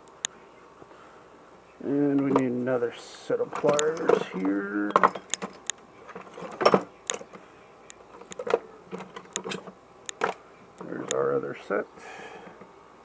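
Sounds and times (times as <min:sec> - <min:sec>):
metal tools clinking: 0:02.1 - 0:11.0.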